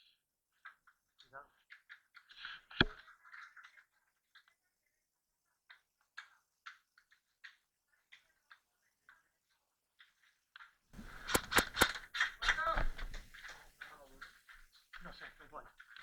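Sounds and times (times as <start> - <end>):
sharp gunfire cracks: 11.0 - 14.1
airsoft gun clicks: 11.0 - 14.2.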